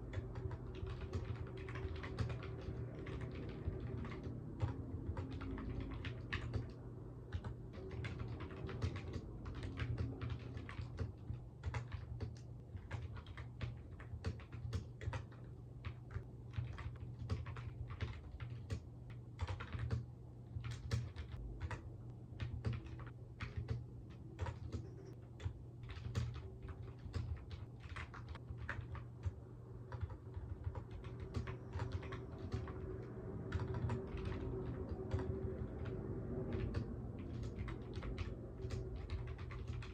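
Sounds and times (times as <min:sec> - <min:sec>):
typing on computer keyboard: 0:00.0 - 0:39.9
low hum: 0:20.1 - 0:39.9.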